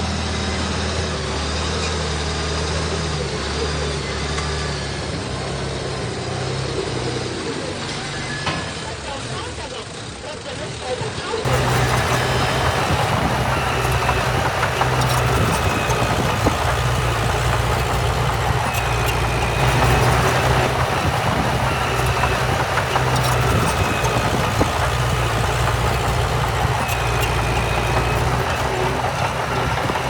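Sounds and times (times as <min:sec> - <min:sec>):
diesel engine running: 0:11.5 - 0:30.0.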